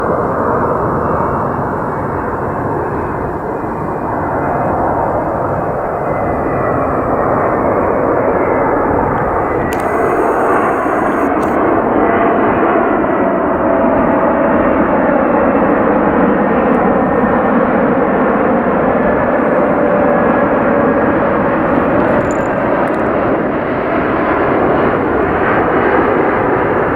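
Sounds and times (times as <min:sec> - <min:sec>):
jet airliner engine rush: 0:00.0 - 0:26.9
faint steady whine: 0:08.9 - 0:11.6.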